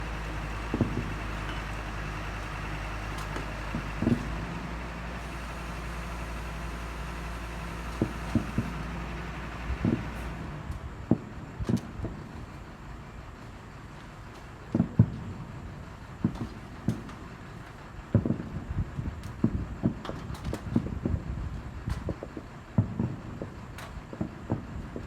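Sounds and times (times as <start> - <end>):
fireworks bangs: 0.0 - 1.6, 2.4 - 4.5, 7.6 - 9.0, 9.7 - 10.3, 11.0 - 12.6, 14.7 - 17.3, 18.1 - 25.0.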